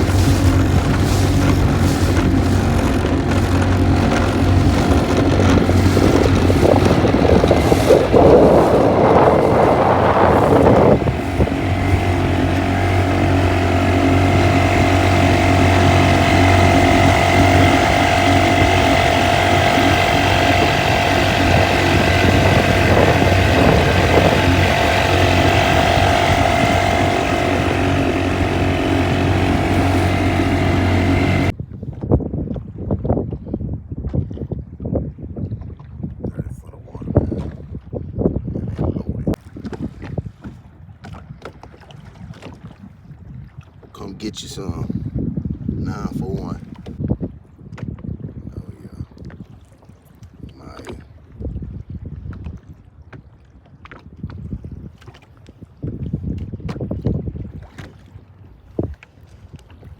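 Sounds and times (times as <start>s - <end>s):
outboard motor running: 0.0s - 32.6s, 35.5s - 59.9s
rush of wind and water: 0.0s - 59.9s.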